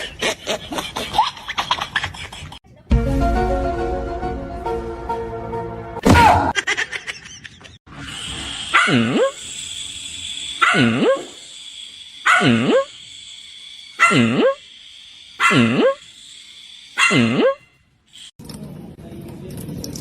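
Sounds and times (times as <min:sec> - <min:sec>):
dog barking: 0:08.7 - 0:09.4, 0:10.6 - 0:11.4, 0:12.2 - 0:12.9, 0:14.0 - 0:14.6, 0:15.4 - 0:16.0, 0:17.0 - 0:17.6.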